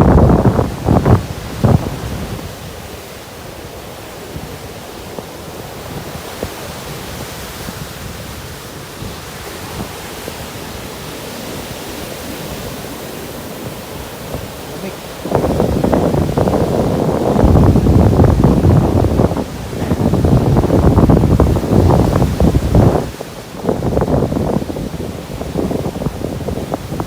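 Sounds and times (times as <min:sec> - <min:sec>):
ocean surf breaking: 0:00.0 - 0:27.0
sea breeze: 0:00.0 - 0:27.0.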